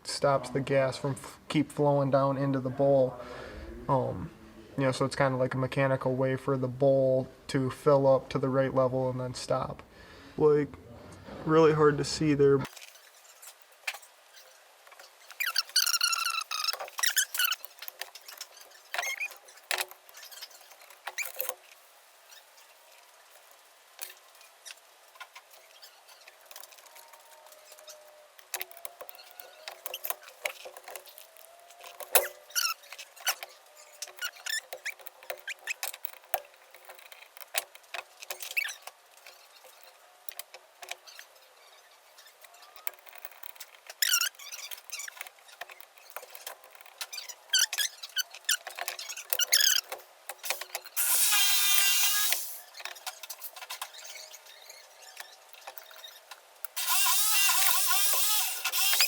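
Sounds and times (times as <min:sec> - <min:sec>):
small parts clicking and tapping: 0:24.0 - 0:41.4, 0:42.2 - 0:59.0.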